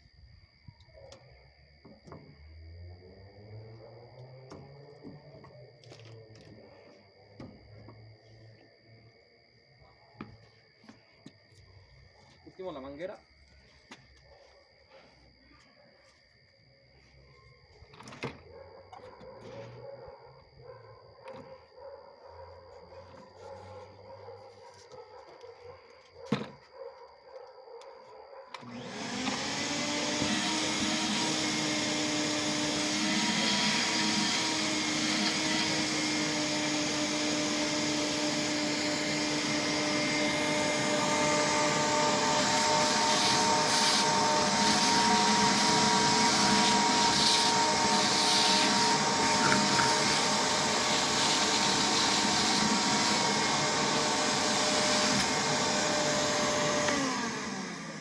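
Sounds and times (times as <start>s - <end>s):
shop vacuum running: 28.6s - 58.0s.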